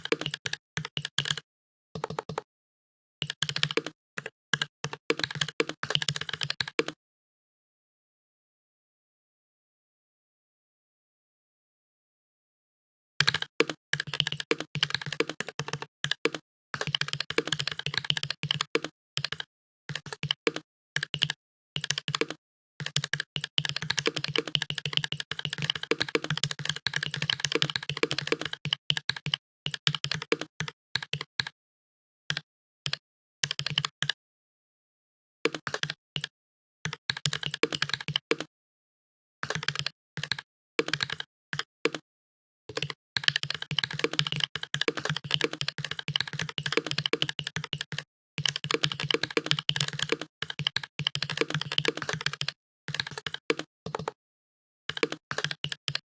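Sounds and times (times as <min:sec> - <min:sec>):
fast keyboard typing: 0:00.0 - 0:01.4, 0:02.0 - 0:02.5, 0:03.2 - 0:07.0, 0:13.2 - 0:31.5, 0:32.3 - 0:34.2, 0:35.5 - 0:36.3, 0:36.9 - 0:38.5, 0:39.4 - 0:42.0, 0:42.7 - 0:54.2, 0:54.9 - 0:56.0.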